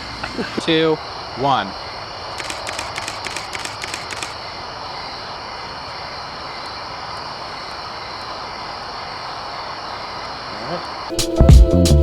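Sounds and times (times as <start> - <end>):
steady background hiss: 0.0 - 12.0
camera shutter burst: 2.4 - 4.4.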